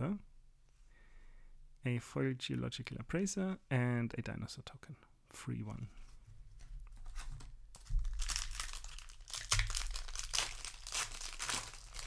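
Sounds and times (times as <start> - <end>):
foil wrapper crinkling: 7.0 - 12.0.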